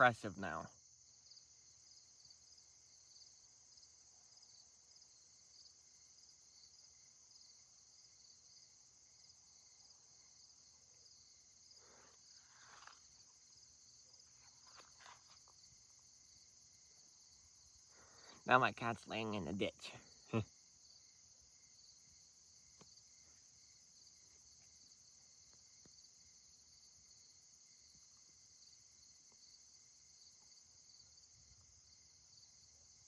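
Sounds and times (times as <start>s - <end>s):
crickets chirping: 0.0s - 33.0s
faint rustles and knocks: 14.2s - 15.8s.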